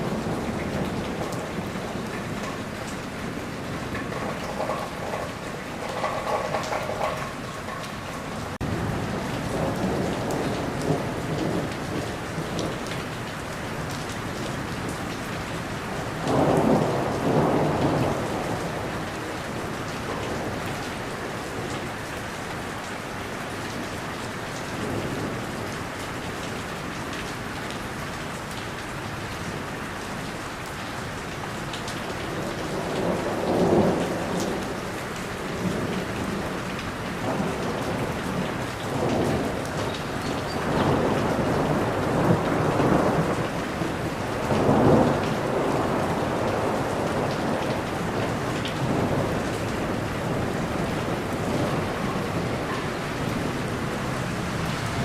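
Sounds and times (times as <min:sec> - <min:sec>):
thunder rolling: 0:00.0 - 0:12.8, 0:16.2 - 0:20.7, 0:32.3 - 0:55.0
steady rain falling: 0:00.0 - 0:55.0.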